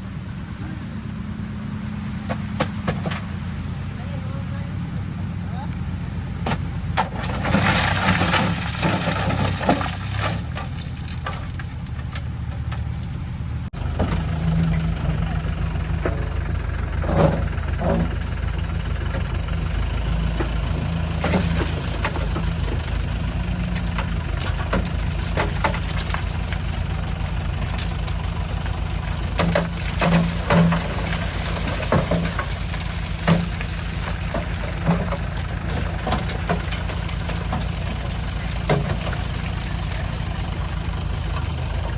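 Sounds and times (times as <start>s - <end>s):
diesel engine running: 0.0s - 41.9s
short knocks and clatters: 13.8s - 41.9s.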